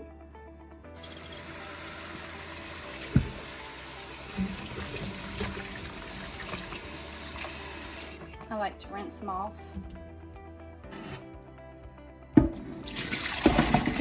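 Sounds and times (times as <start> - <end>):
kitchen faucet running: 1.0 - 8.5, 12.6 - 14.0
potatoes rinsed under water: 1.0 - 8.6, 12.6 - 14.0.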